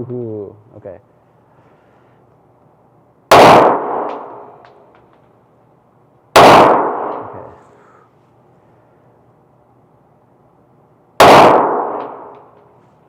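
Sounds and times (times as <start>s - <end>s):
pistol shots echoing: 3.3s - 4.7s, 6.4s - 7.6s, 11.2s - 12.6s.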